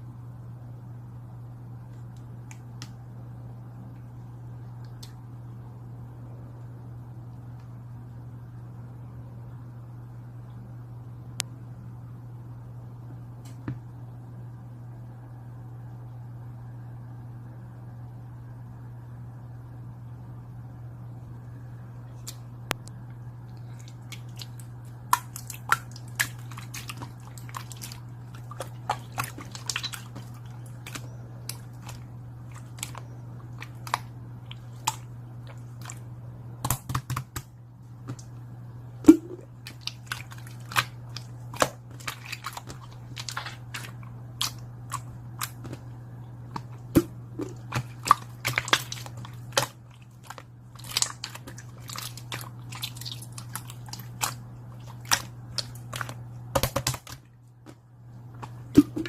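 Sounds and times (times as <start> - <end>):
steady low hum: 0.0 - 59.0
chewing and crunching: 23.5 - 36.1, 39.2 - 45.8, 46.6 - 56.2.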